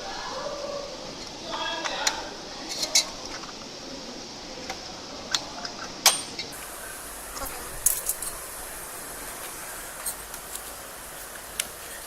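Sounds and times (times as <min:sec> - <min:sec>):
heatsink clips clicking: 0:07.8 - 0:08.6, 0:09.4 - 0:12.0.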